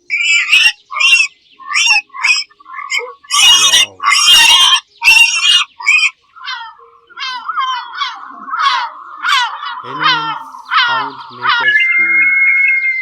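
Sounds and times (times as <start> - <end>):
animal harsh cries: 0.0 - 13.0
steady background drone: 6.2 - 13.0
short animal calls falling in pitch: 6.4 - 12.4.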